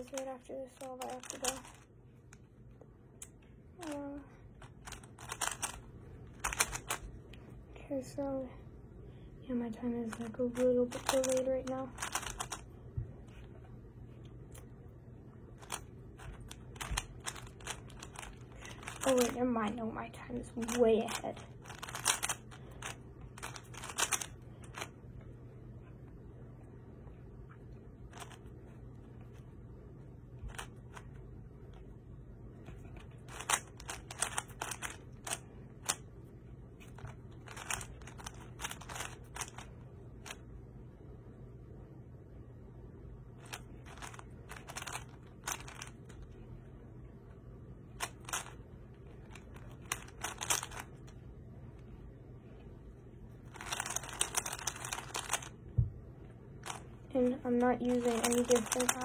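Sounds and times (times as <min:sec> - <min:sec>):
speed cube clacking turns: 0:00.0 - 0:01.8, 0:04.6 - 0:07.1, 0:10.1 - 0:12.8, 0:15.6 - 0:19.8, 0:20.5 - 0:25.0, 0:28.1 - 0:28.4, 0:30.4 - 0:31.2, 0:32.9 - 0:36.0, 0:36.8 - 0:40.4, 0:43.4 - 0:46.2, 0:48.0 - 0:48.6, 0:49.2 - 0:51.2, 0:53.5 - 0:55.6, 0:56.6 - 0:59.0.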